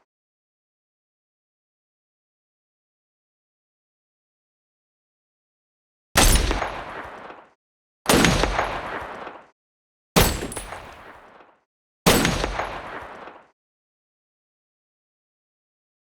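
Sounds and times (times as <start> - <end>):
gunshot echo tail: 6.2 - 7.5, 8.1 - 9.5, 10.2 - 11.4, 12.1 - 13.5
rifle shots: 6.2 - 7.5, 8.1 - 9.5, 10.2 - 11.4, 12.1 - 13.4.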